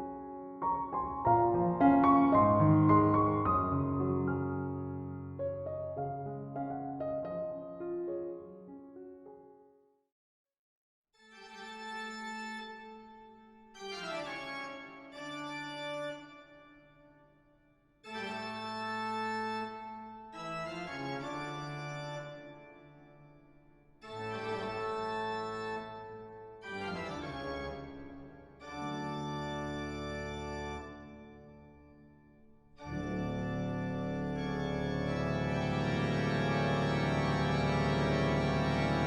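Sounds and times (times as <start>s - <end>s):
organ-like keyboard chords: 0.0s - 9.4s, 24.1s - 31.8s, 32.8s - 39.0s.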